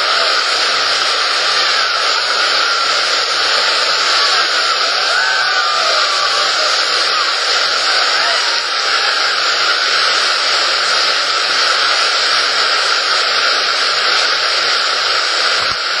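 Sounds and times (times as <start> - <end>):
whitewater river rapids rushing: 0.0 - 16.0.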